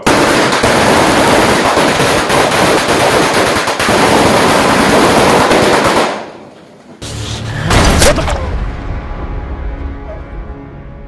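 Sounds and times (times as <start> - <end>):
rapid gunfire: 0.0 - 6.4
low rumble: 7.0 - 11.0.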